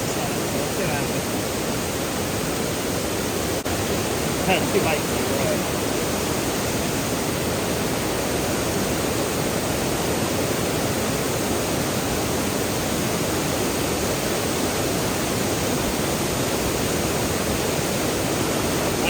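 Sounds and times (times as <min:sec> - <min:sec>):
waterfall roaring over rocks: 0:00.0 - 0:19.0.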